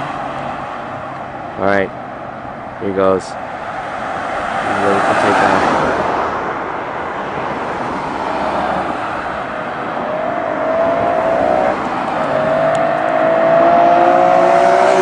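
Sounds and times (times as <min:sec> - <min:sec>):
car engine accelerating hard: 0:07.5 - 0:15.0.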